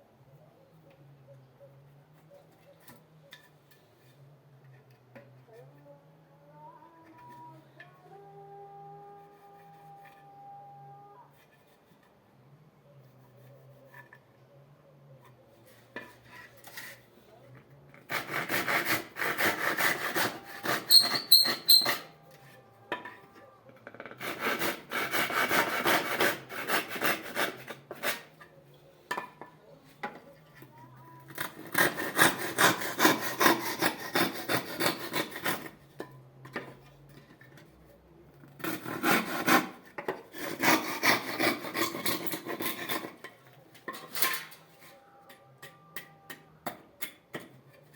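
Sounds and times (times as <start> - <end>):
hand tool rasping wood: 18.0 - 22.1, 24.0 - 28.4, 31.3 - 35.8, 38.6 - 43.2
brief squeak: 20.9 - 22.1.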